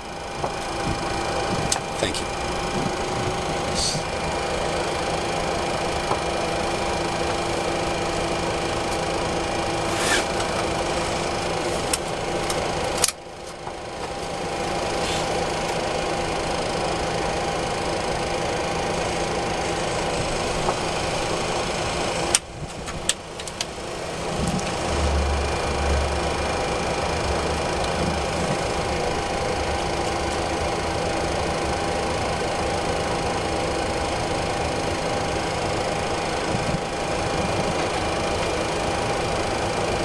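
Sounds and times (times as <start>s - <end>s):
jet engine starting hum: 0.0s - 40.0s
sharp clicks: 9.8s - 14.2s.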